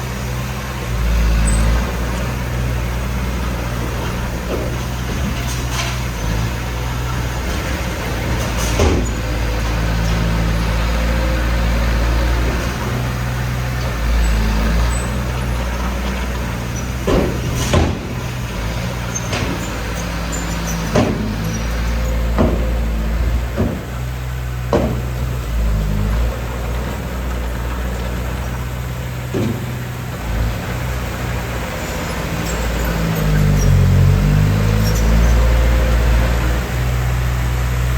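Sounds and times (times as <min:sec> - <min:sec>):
heavy diesel engine rumbling: 0:00.0 - 0:37.9
sharp knocks: 0:17.0 - 0:18.4, 0:20.9 - 0:21.5, 0:22.3 - 0:22.9, 0:23.5 - 0:24.1, 0:24.7 - 0:25.4.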